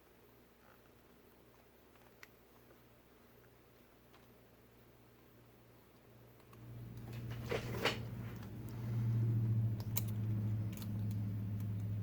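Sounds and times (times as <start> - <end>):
low hum: 2.9 - 12.0.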